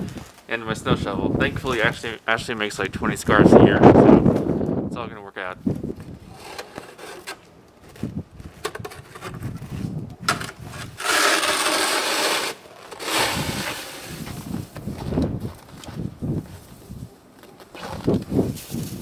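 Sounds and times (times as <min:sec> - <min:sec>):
snow shovel scraping: 0:06.3 - 0:07.4, 0:08.9 - 0:14.8.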